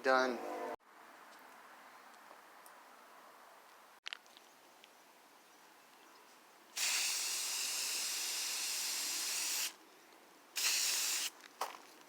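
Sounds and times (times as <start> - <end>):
aerosol spray can hissing: 6.8 - 9.8, 10.6 - 11.3.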